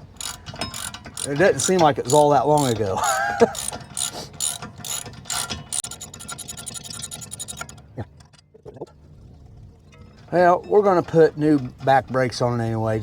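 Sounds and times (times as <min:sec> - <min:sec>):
socket ratchet clicking: 0:00.0 - 0:02.8, 0:03.5 - 0:07.8.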